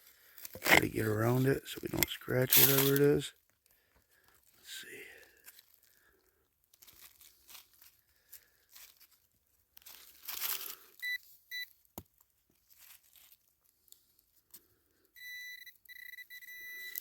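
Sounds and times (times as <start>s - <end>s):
scraping and crunching of dirt: 0.0s - 11.0s, 12.0s - 14.8s
short high beeps: 15.2s - 17.0s.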